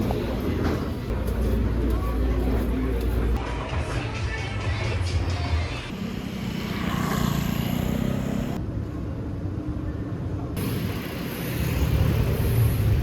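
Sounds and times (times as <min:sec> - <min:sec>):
traffic rumble: 0:00.0 - 0:03.4.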